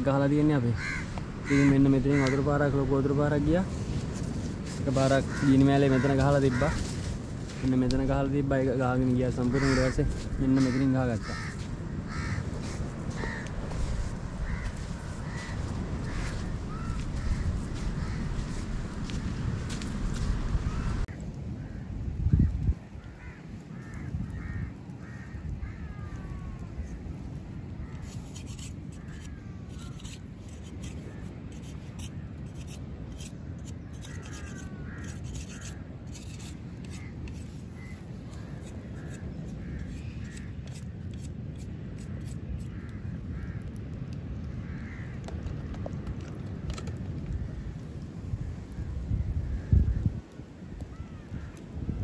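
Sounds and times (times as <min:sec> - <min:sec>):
steady low rumble: 0:00.1 - 0:28.0
birds cawing: 0:00.5 - 0:02.6, 0:05.1 - 0:06.9, 0:09.4 - 0:19.3, 0:20.6 - 0:41.3, 0:42.0 - 0:46.1, 0:50.8 - 0:51.7.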